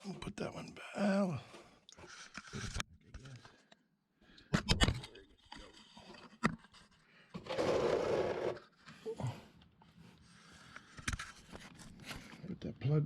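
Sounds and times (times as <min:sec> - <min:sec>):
loud scraping rattle: 0:07.4 - 0:08.6.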